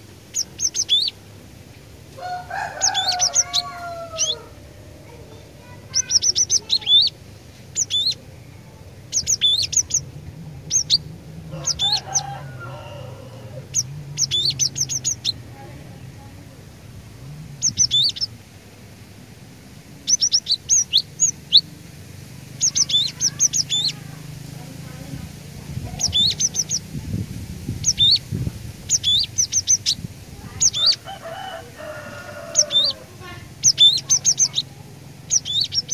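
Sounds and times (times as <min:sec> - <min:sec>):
lower bird call: 0:00.0 - 0:35.9
bird singing rapid high notes: 0:00.3 - 0:01.2, 0:02.7 - 0:12.3, 0:13.6 - 0:15.5, 0:17.6 - 0:18.4, 0:20.0 - 0:21.8, 0:22.4 - 0:24.6, 0:25.9 - 0:27.0, 0:27.7 - 0:31.1, 0:32.4 - 0:35.9.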